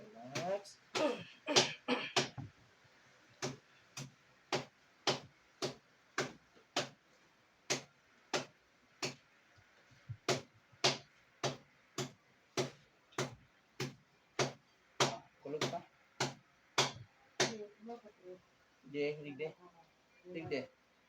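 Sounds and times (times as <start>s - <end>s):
rhythmic tapping on a body: 0.4s - 2.6s, 3.4s - 7.1s, 7.7s - 17.6s.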